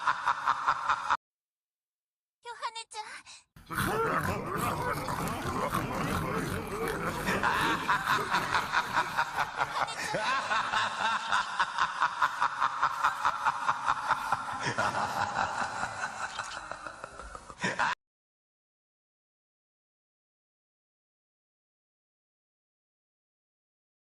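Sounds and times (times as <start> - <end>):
snickering laughter: 3.6 - 18.0.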